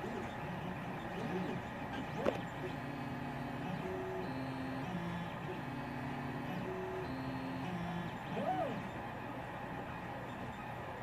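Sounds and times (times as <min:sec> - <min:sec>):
steady background hum: 0:00.0 - 0:11.0
stepper motors whining: 0:00.2 - 0:09.2.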